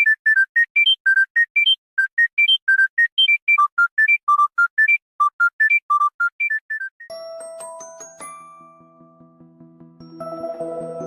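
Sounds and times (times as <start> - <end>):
electronic beep ringtone: 0.0 - 7.1.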